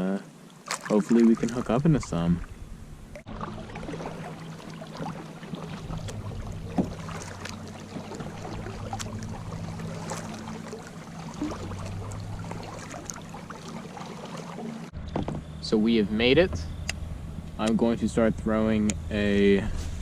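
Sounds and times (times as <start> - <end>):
small water splashes: 0.4 - 2.6, 3.2 - 15.0
steady low hum: 1.1 - 20.0
knocks against kayak hull: 6.0 - 7.2.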